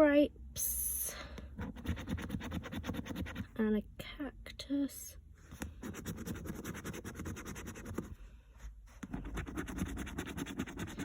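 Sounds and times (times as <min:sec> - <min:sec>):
coin scratching a scratchcard: 0:01.6 - 0:03.4, 0:05.8 - 0:08.0, 0:09.3 - 0:11.0.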